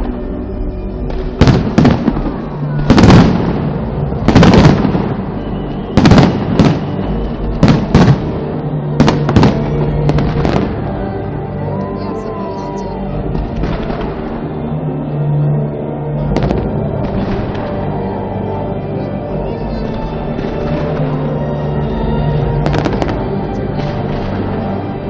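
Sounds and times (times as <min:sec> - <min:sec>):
fireworks bangs: 0:01.1 - 0:11.0, 0:13.2 - 0:14.4, 0:16.3 - 0:17.9, 0:22.6 - 0:24.6.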